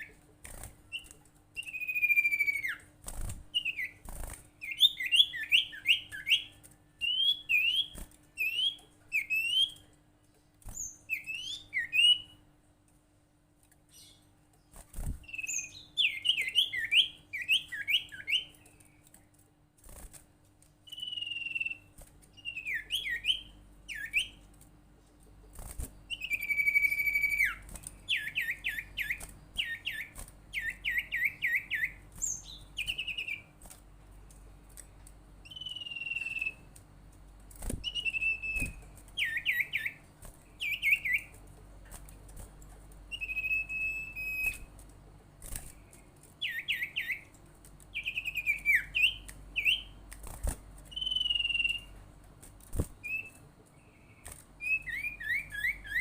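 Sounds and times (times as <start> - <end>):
bird chirping and whistling: 0.9 - 2.9, 3.5 - 4.0, 4.6 - 9.8, 10.8 - 12.4, 15.2 - 18.5, 20.9 - 24.4, 26.1 - 33.4, 35.4 - 36.6, 37.8 - 40.0, 40.6 - 41.3, 43.1 - 44.7, 46.4 - 47.2, 47.9 - 49.9, 50.9 - 51.9, 53.0 - 53.4, 54.6 - 56.0.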